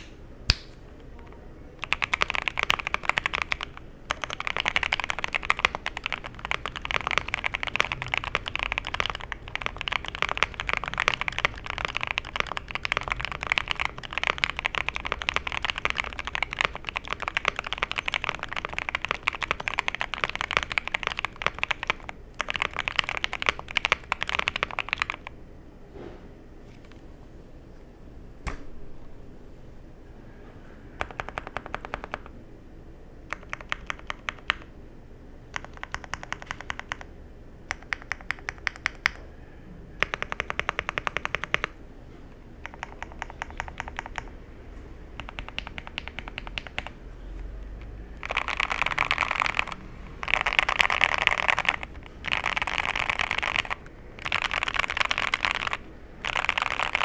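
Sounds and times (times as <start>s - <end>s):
mechanical keyboard typing: 1.8s - 25.3s, 31.0s - 32.4s, 33.3s - 34.7s, 35.5s - 37.1s, 37.7s - 39.3s, 40.0s - 41.8s, 42.6s - 44.4s, 45.1s - 57.0s.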